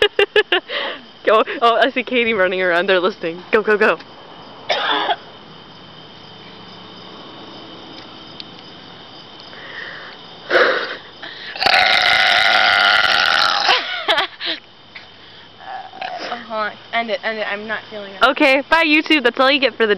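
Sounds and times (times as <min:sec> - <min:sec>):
girl burping loudly: 0:11.5 - 0:13.9, 0:15.6 - 0:16.4.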